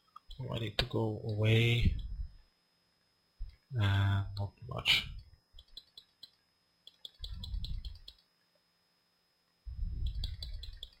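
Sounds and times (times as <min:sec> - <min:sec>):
low muffled rumbles on microphone: 0:01.8 - 0:02.4, 0:07.2 - 0:08.0, 0:09.7 - 0:10.8
computer mouse clicking: 0:05.6 - 0:08.3, 0:10.0 - 0:11.0.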